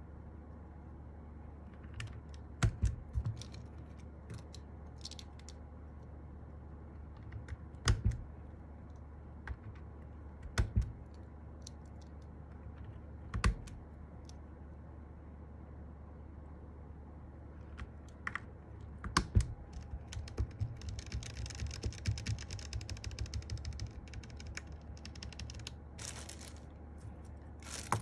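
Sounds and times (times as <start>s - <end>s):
mechanical keyboard clicks: 17.8s - 25.8s.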